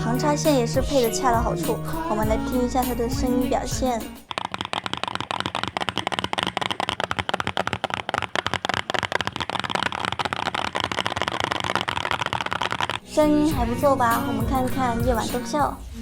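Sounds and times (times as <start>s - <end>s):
fast typing on mechanical keyboard: 4.2s - 13.1s.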